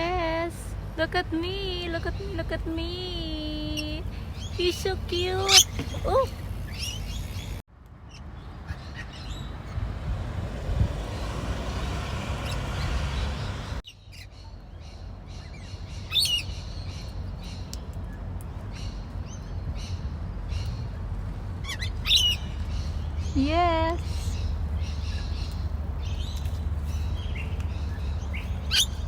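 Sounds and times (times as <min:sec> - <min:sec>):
birds chirping: 0:00.0 - 0:09.9, 0:11.0 - 0:29.0
steady low rumble: 0:12.9 - 0:29.0.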